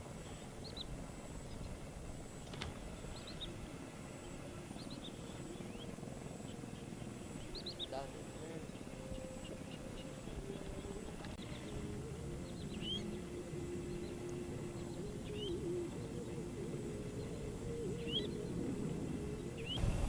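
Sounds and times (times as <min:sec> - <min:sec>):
bird chirping: 0:00.0 - 0:20.0
outdoor background noise: 0:00.0 - 0:20.0
steady low hum: 0:00.0 - 0:20.0.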